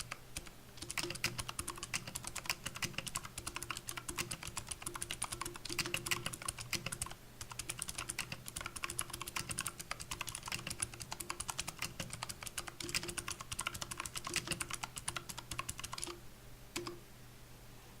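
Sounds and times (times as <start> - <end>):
mechanical keyboard key clicks: 0.0 - 16.2.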